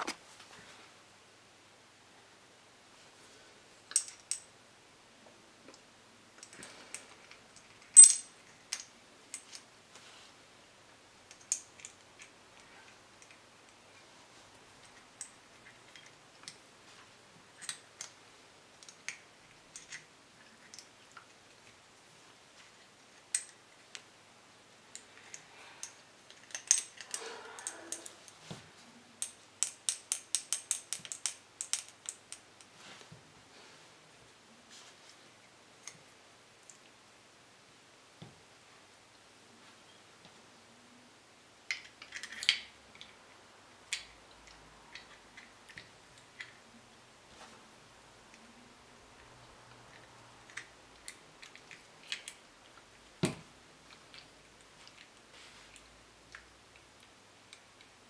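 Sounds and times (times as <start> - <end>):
metal parts clicking and clinking: 3.9 - 4.5, 7.2 - 9.6, 24.9 - 28.4, 29.2 - 32.4, 41.7 - 43.1.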